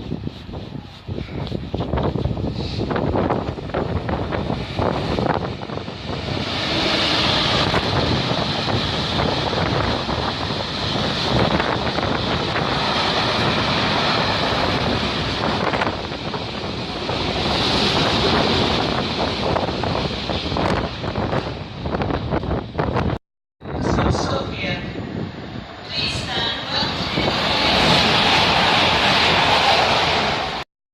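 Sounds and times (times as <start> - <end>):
train wheels rushing on rail: 0.0 - 23.2, 25.2 - 30.6
wind on microphone: 0.0 - 30.6.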